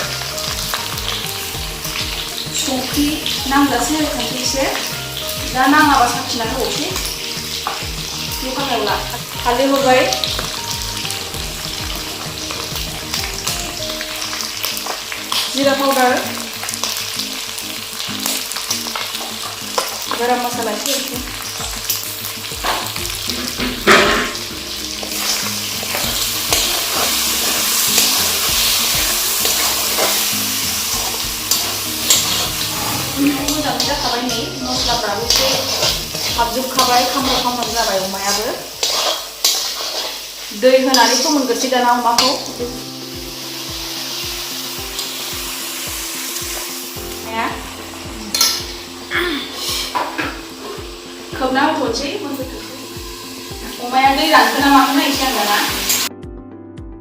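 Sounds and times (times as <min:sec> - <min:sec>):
meat sizzling in hot oil: 0:00.0 - 0:56.1
spatula scraping and knocking pan: 0:21.4 - 0:40.3, 0:49.6 - 0:51.0.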